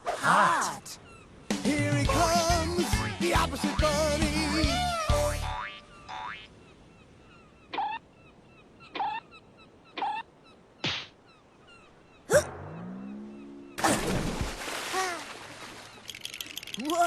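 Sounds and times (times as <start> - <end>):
faint bird chirps: 5.8 - 13.8
squeaky falling blips: 12.3 - 13.8.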